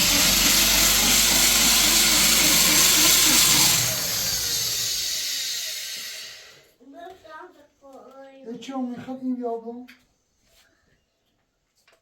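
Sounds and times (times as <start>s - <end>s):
power tool motor running: 0.0s - 6.6s.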